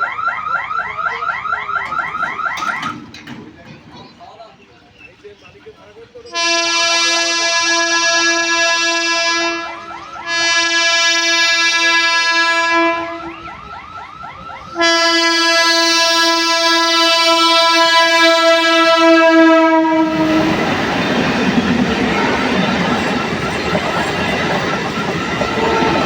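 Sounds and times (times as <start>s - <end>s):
locomotive horn blasts: 6.3s - 13.5s, 14.7s - 20.9s, 25.5s - 26.0s.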